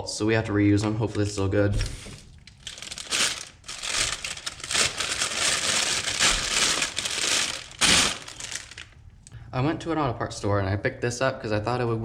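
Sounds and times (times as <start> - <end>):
packaging crinkling: 2.4 - 9.0.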